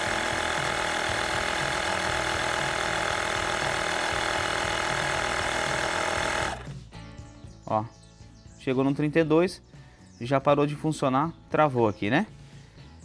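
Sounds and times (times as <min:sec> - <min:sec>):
small air compressor running: 0:00.0 - 0:06.8.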